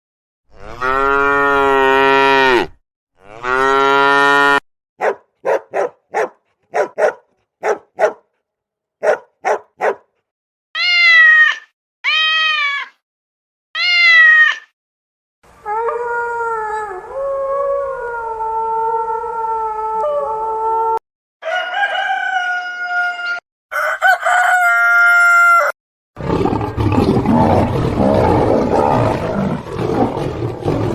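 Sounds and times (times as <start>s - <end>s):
cow mooing: 0.5s - 4.6s
lion roaring: 26.2s - 30.9s.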